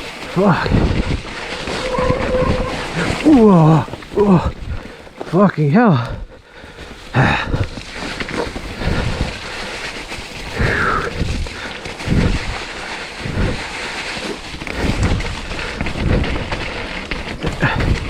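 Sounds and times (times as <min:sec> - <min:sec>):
bike knocking and rattling: 0:07.5 - 0:18.0.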